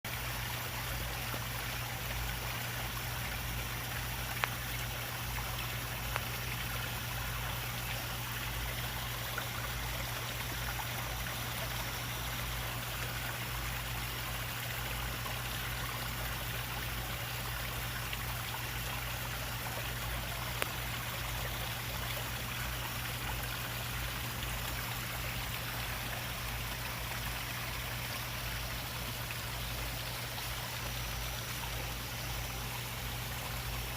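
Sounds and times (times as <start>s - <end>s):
low steady hum: 0.1s - 33.9s
pond water trickling: 0.1s - 33.9s.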